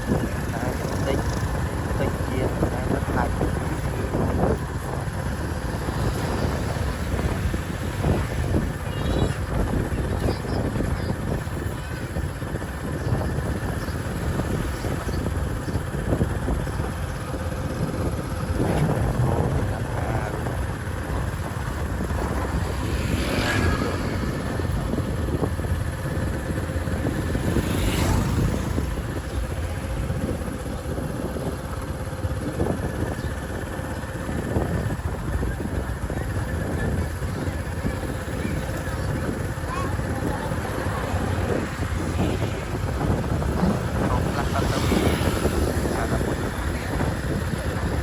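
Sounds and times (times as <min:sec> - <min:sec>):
loud vehicles passing: 0:00.0 - 0:48.0
motorbikes running: 0:00.0 - 0:48.0
road traffic rumble: 0:00.0 - 0:48.0.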